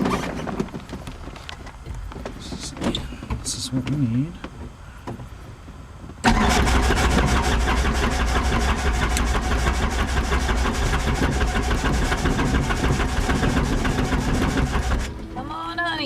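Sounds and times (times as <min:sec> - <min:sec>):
low hum: 0:00.0 - 0:16.0
helicopter starter cranking engine: 0:06.2 - 0:15.2.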